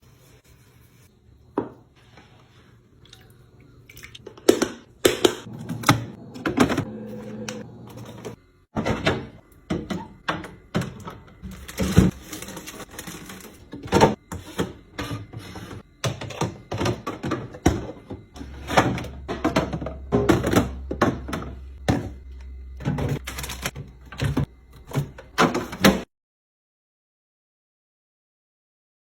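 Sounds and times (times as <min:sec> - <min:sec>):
refrigerator humming: 0:02.6 - 0:26.1
plastic boxes knocking and clattering: 0:08.8 - 0:26.0.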